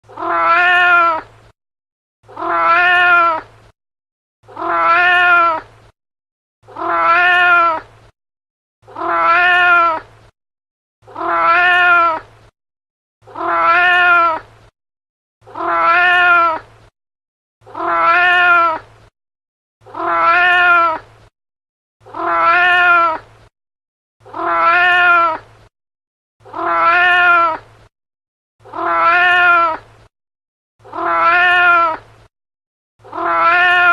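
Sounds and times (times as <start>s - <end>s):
cat meowing: 0.1s - 1.3s, 2.3s - 3.5s, 4.5s - 5.7s, 6.7s - 7.8s, 8.9s - 10.0s, 11.1s - 12.2s, 13.3s - 14.4s, 15.5s - 16.6s, 17.7s - 18.8s, 19.9s - 21.0s, 22.1s - 23.2s, 24.2s - 25.4s, 26.5s - 27.6s, 28.6s - 29.8s, 30.8s - 32.0s, 33.0s - 33.9s.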